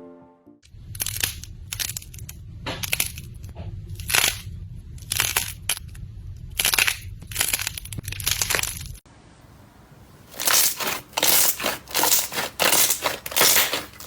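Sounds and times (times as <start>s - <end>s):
crunchy slime being squeezed: 4.0s - 5.8s, 6.6s - 9.0s, 10.3s - 14.0s.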